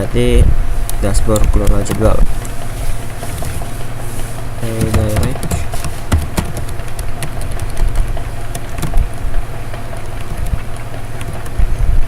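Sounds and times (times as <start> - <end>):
steady low hum: 0.0 - 12.0
keyboard keys clicking: 4.6 - 11.7.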